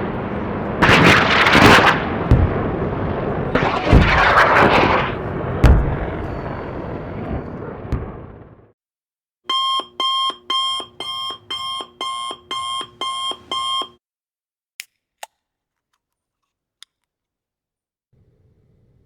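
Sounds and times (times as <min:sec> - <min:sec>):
alarm clock beeping: 0:09.5 - 0:14.0.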